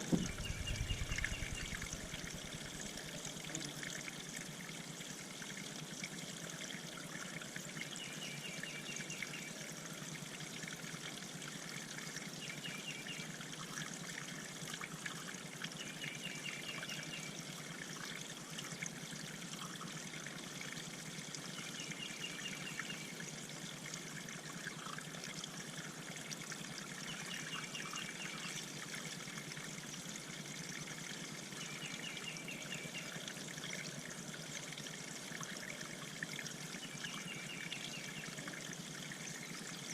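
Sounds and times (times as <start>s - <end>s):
songbird singing: 0.0s - 2.4s, 31.5s - 33.2s, 36.8s - 38.5s
water trickling into pond: 0.0s - 39.9s.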